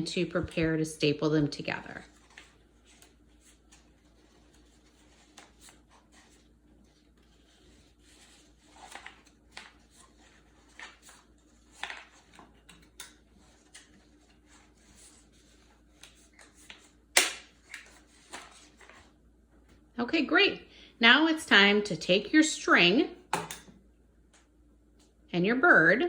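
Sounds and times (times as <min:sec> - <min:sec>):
paper rustling and crinkling: 0:01.9 - 0:19.2.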